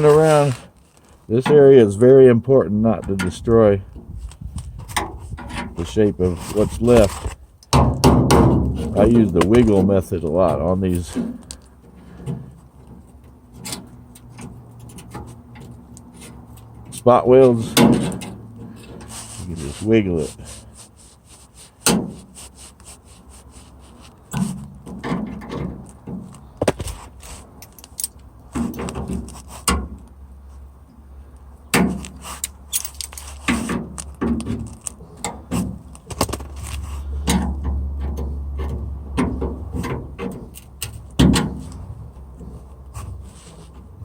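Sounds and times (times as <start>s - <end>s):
metal creaking: 0.0s - 30.1s, 31.7s - 44.0s
sheet metal clanking and scraping: 2.9s - 20.5s, 23.9s - 27.7s, 32.8s - 43.8s.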